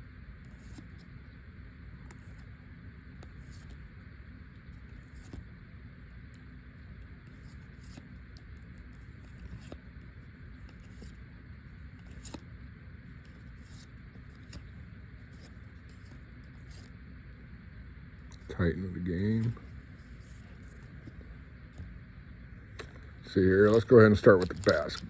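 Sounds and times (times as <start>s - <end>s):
low background hum: 0.0s - 25.0s
trading cards flipping: 0.5s - 1.1s, 2.0s - 2.5s, 3.1s - 3.8s, 4.8s - 5.5s, 7.2s - 12.5s, 13.1s - 17.0s, 18.2s - 22.0s, 22.7s - 25.0s.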